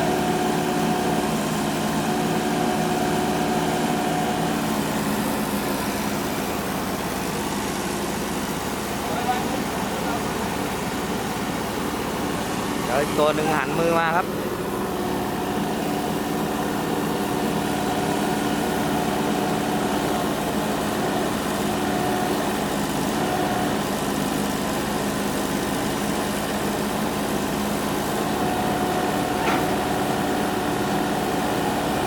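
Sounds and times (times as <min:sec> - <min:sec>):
excavator diesel engine running: 0:00.0 - 0:32.0
short click: 0:29.4 - 0:29.8.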